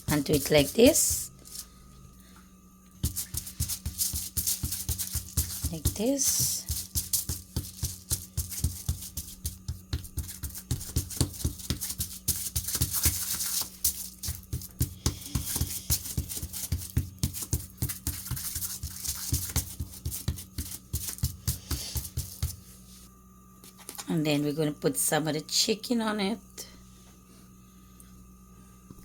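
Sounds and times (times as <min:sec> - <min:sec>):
wet hands patting dough: 0:00.0 - 0:01.4, 0:03.0 - 0:22.8.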